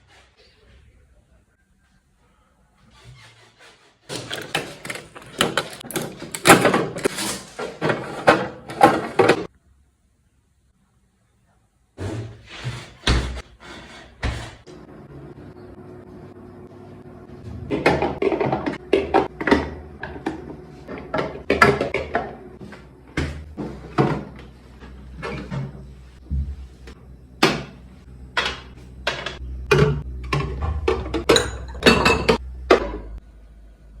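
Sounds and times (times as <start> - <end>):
refrigerator doors and drawers clattering: 4.1 - 9.5, 17.4 - 22.4, 28.4 - 33.2.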